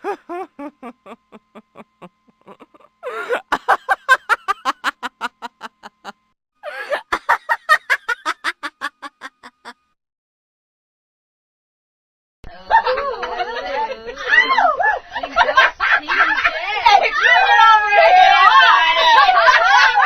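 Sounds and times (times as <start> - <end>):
woman laughing: 0.0 - 9.8.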